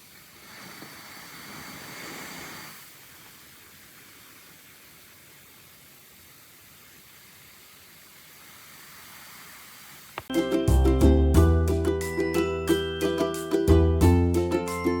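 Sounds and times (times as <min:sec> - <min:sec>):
cpap machine airflow hiss: 0:00.0 - 0:10.3.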